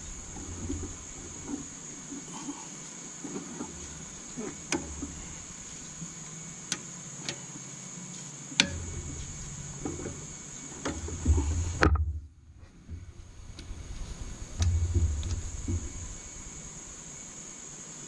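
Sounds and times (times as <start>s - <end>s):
steady high hiss: 0.0s - 18.0s
low thumps: 8.6s - 16.6s.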